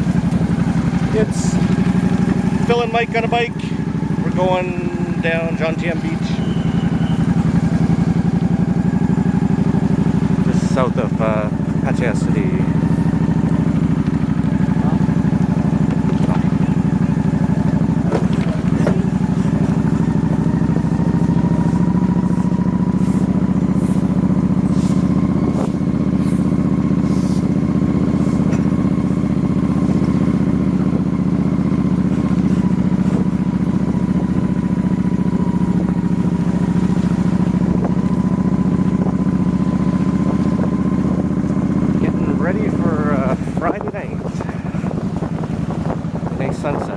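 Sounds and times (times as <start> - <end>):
motorbike engine running: 0.0 - 46.9
wind rushing over microphone: 36.9 - 41.3, 42.1 - 46.9.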